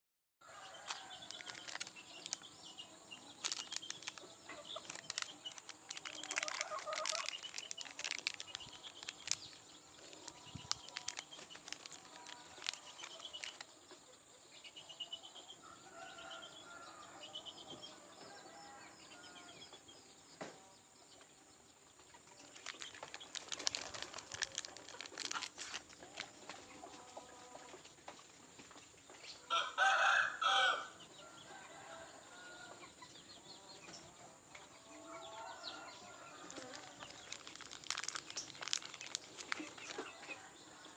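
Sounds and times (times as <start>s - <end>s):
scratching clicks: 4.8s - 13.6s.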